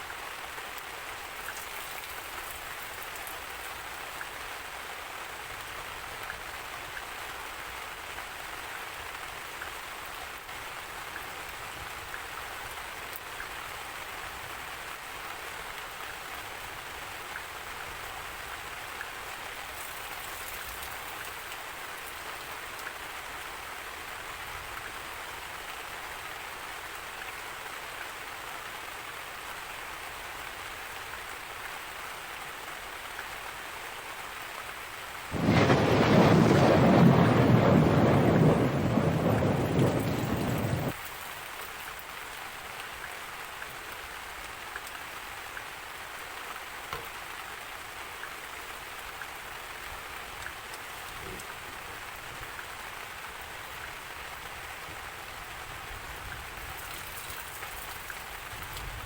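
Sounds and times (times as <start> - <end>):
steady rain: 0.0 - 59.0
thunder rumbling: 35.4 - 41.0.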